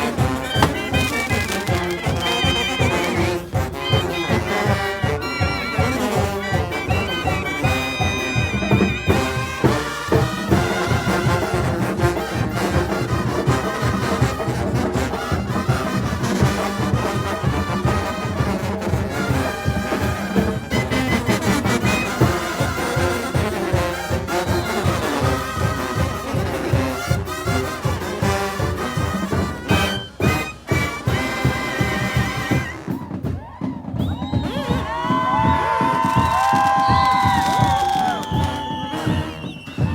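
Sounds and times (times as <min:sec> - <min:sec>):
pulsing drum and bass beat: 0:00.0 - 0:12.5, 0:34.1 - 0:39.9
trumpets and trombones: 0:00.0 - 0:33.5, 0:34.2 - 0:39.9.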